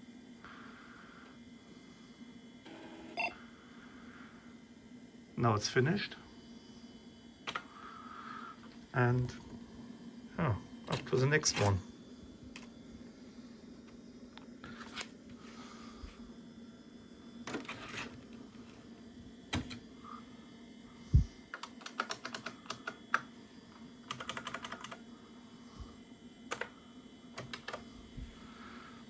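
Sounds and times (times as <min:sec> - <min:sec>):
steady low hum: 0:00.0 - 0:29.0
computer keyboard typing: 0:21.5 - 0:23.3, 0:24.1 - 0:25.0, 0:26.5 - 0:26.7, 0:27.4 - 0:27.8.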